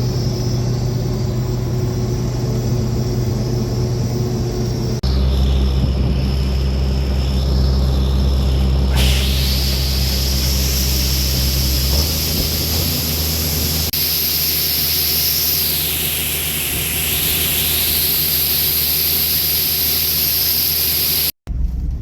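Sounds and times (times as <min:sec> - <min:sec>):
high whine of threshing machinery: 0:00.0 - 0:21.8
harvester engine hum: 0:00.0 - 0:22.0.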